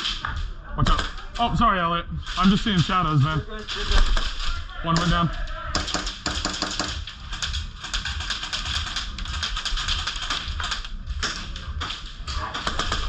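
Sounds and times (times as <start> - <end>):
airsoft guns firing: 3.8 - 11.4, 12.4 - 13.0.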